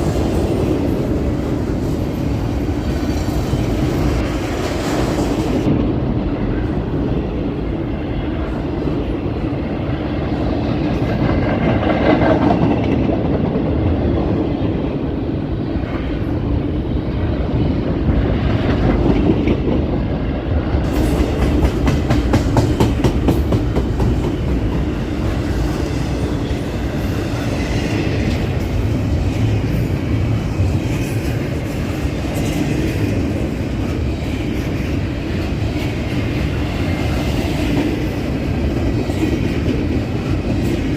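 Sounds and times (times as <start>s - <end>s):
freight train wheels clacking: 18.4s - 40.9s.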